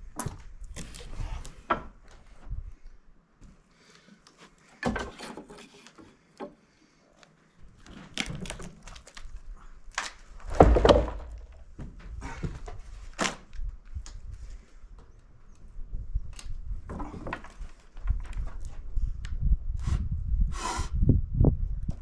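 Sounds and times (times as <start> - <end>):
wood knocking and thudding: 4.8 - 5.6, 10.4 - 12.8.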